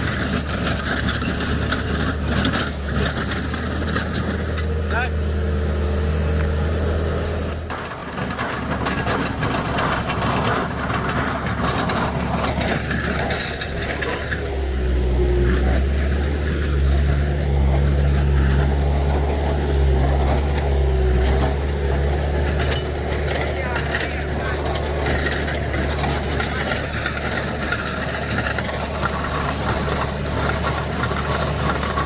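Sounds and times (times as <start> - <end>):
broad mechanical noise: 0.0 - 32.0
engine running: 0.0 - 32.0.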